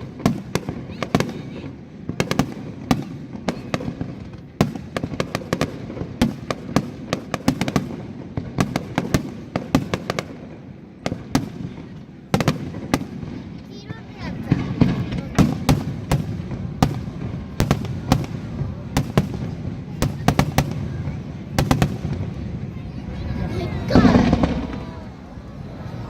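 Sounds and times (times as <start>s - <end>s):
fireworks bangs and crackling pops: 0.0s - 25.5s.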